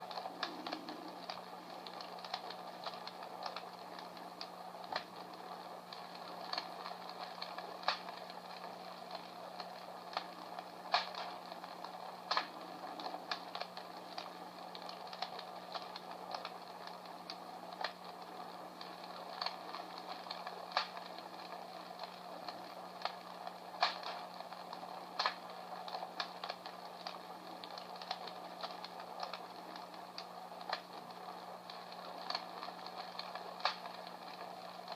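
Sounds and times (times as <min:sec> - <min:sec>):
electronic fire crackle pops: 0:00.0 - 0:34.9
low hum: 0:00.0 - 0:34.9
soft steady hiss: 0:00.0 - 0:34.9.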